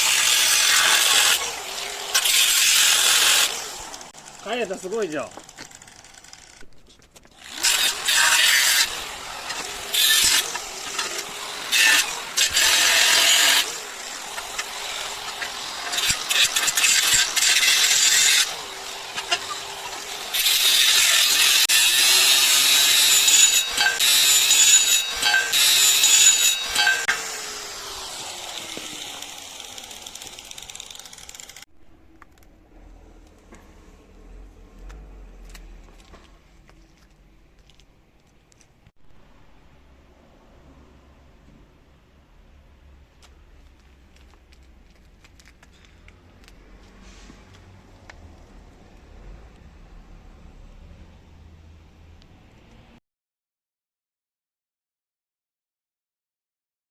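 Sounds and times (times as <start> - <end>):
power tool working metal: 0.0 - 6.4, 7.4 - 31.7
tool winding down whine: 0.0 - 6.6, 7.4 - 31.7.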